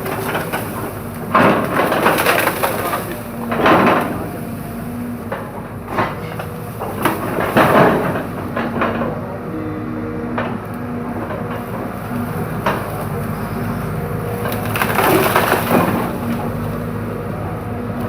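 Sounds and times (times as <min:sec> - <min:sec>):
excavator engine hum: 0:00.0 - 0:18.0
bamboo cracking and splintering: 0:14.3 - 0:16.7.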